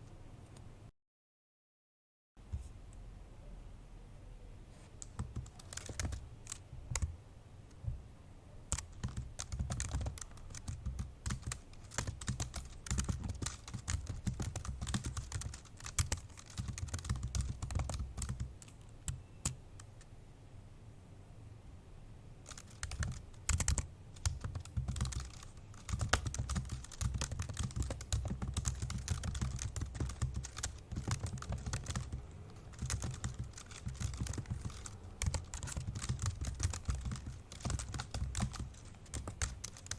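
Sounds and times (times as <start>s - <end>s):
fast typing on laptop keyboard: 5.0s - 7.1s, 8.7s - 19.6s, 22.4s - 39.9s.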